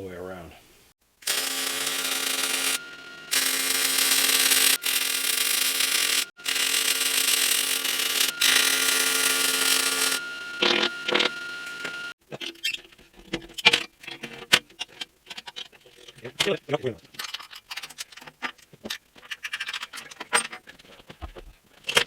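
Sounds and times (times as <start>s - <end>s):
welder arc crackling and buzzing: 1.2s - 12.2s.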